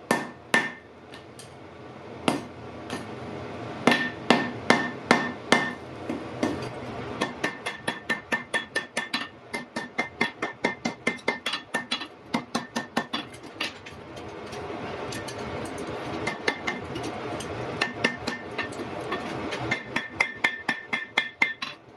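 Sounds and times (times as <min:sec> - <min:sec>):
hammer striking iron on anvil: 0:00.1 - 0:00.9, 0:02.3 - 0:03.1, 0:03.9 - 0:13.4, 0:16.3 - 0:16.8, 0:17.8 - 0:21.8.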